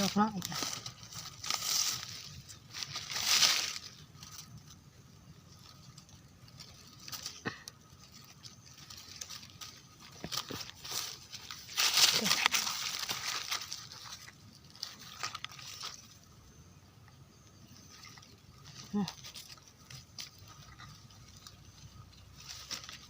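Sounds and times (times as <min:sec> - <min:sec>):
swishes through undergrowth: 0:00.0 - 0:04.5, 0:06.5 - 0:16.1
dry leaves rustling and crackling: 0:00.0 - 0:23.0.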